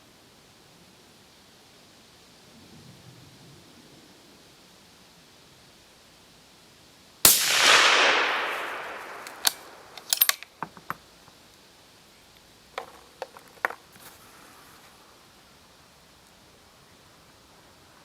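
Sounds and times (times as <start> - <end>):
suppressed rifle shot: 7.3 - 10.4
rifle bolt metallic clicks: 7.3 - 10.5.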